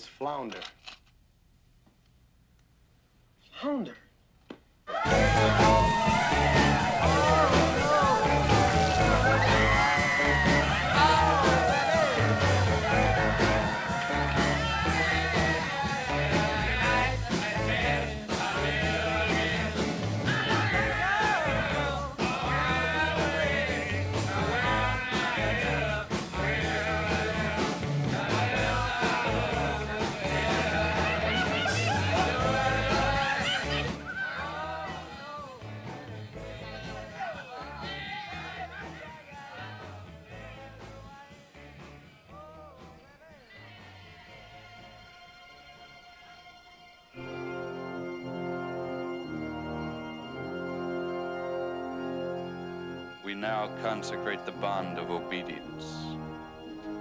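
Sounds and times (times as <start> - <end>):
rock and roll song with vocals: 5.0 - 44.9, 53.2 - 56.3.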